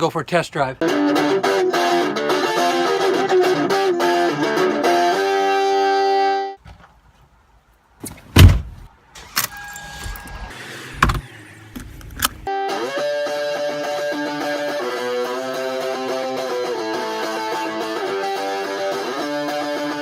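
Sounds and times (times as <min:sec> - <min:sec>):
electric guitar music: 0:00.8 - 0:06.6, 0:12.4 - 0:20.0
sharp loud thumps and knocks: 0:08.3 - 0:08.9.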